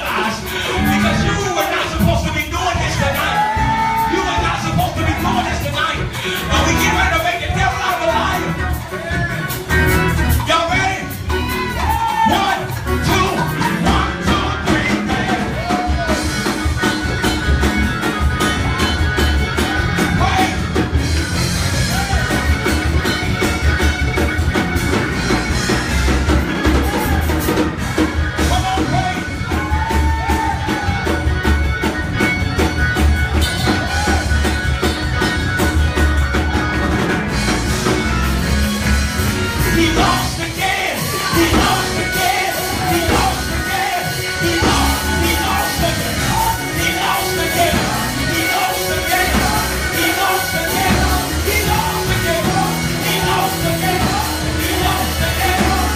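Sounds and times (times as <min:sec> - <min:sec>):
band with drums and bass: 0:00.0 - 0:55.9
person singing: 0:39.6 - 0:55.9.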